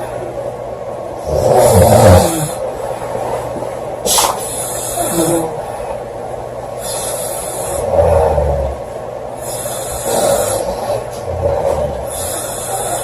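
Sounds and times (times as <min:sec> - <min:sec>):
woman snoring loudly: 0:01.2 - 0:02.6, 0:07.1 - 0:08.8, 0:09.5 - 0:13.0.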